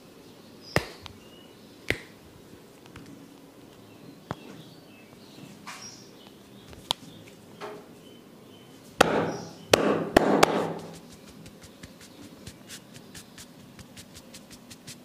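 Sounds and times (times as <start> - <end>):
hand strikes on body: 9.0 - 14.0.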